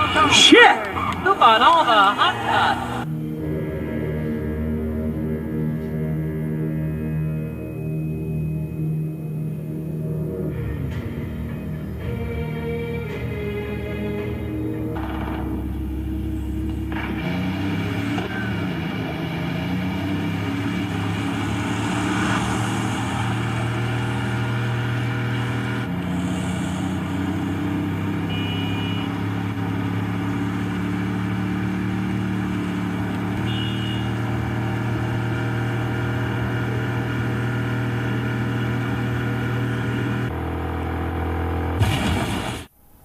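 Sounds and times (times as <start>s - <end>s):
video game car engine: 0.0s - 43.0s.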